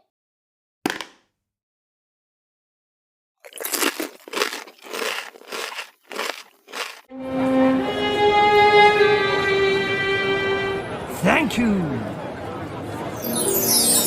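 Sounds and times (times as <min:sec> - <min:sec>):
loud eating crunches: 0:03.4 - 0:07.1.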